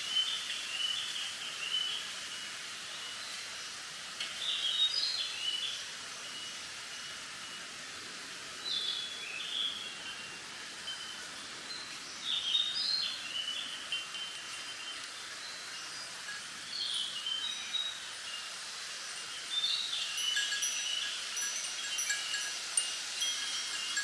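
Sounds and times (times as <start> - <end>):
wind rustling bamboo leaves: 0.0 - 24.0
songbird singing: 8.6 - 18.6, 19.2 - 24.0.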